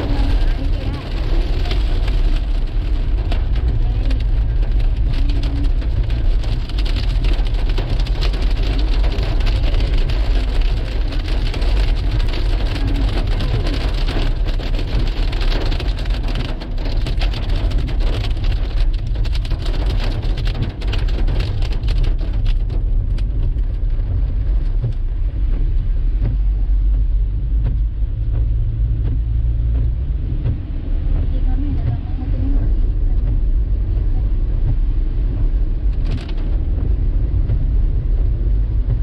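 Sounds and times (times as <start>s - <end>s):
hail pelting down: 0.0s - 25.1s
low rumble: 0.0s - 39.0s.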